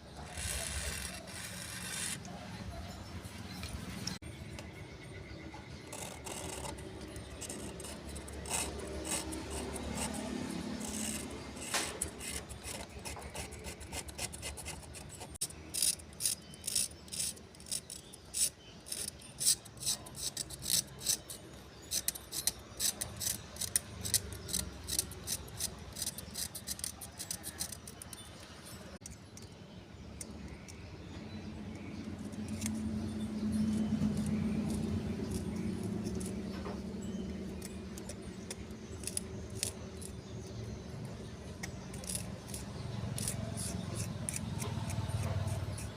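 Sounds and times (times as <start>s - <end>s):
hand tools scraping: 0.0s - 4.2s, 5.9s - 29.1s, 32.2s - 40.5s, 41.1s - 45.9s.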